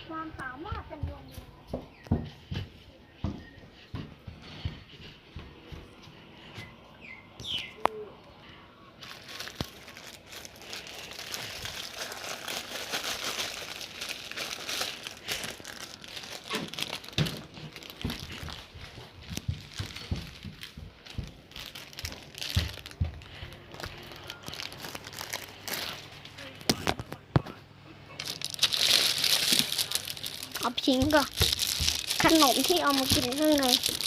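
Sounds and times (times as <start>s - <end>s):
wrappers crumpled and rustled: 9.0s - 27.5s, 28.1s - 34.0s.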